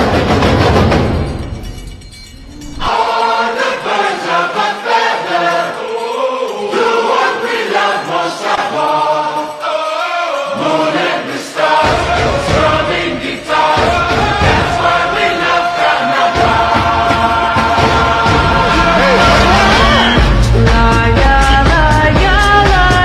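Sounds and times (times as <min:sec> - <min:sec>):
choir singing sustained chords: 0:02.8 - 0:21.6
heavy low drum: 0:11.8 - 0:15.8, 0:16.4 - 0:23.0.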